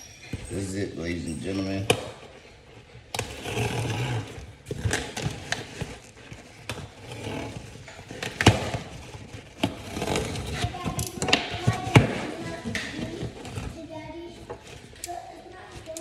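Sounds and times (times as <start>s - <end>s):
packaging rustling and scraping: 0.0s - 16.0s
scattered clicks: 10.9s - 11.6s.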